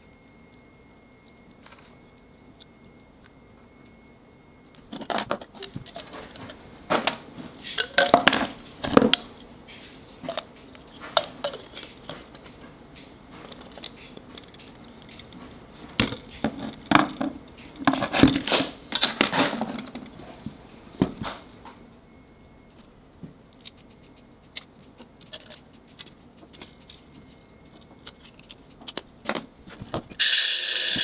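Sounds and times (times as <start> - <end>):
metal parts and tools clinking: 4.9 - 9.4, 10.2 - 15.4.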